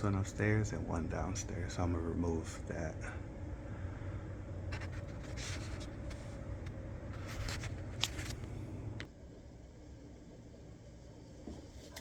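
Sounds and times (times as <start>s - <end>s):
steady low hum: 0.0s - 12.0s
air filter scraping and rustling: 4.7s - 8.8s.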